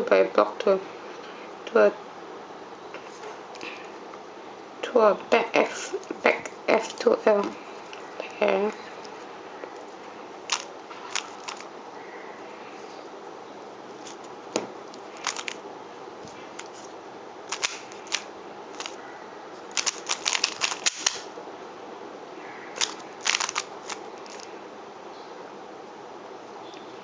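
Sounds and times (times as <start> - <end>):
steady low hiss: 0.0 - 27.0
puzzle cube layers clicking: 17.5 - 19.0, 19.7 - 21.3, 22.8 - 24.5.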